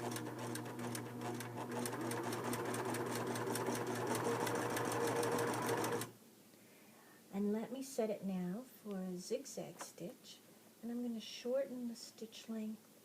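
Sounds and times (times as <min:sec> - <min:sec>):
sewing machine motor hum: 0:00.0 - 0:06.1.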